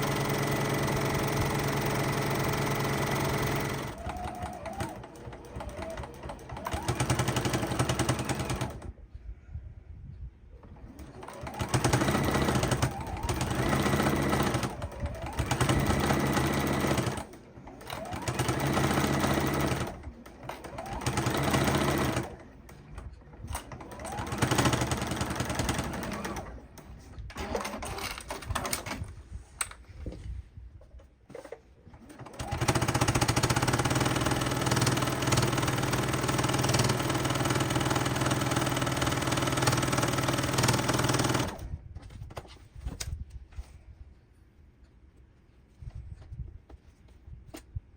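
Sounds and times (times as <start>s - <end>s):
sewing machine stitching: 0.0s - 8.9s, 10.6s - 29.1s, 31.3s - 41.8s.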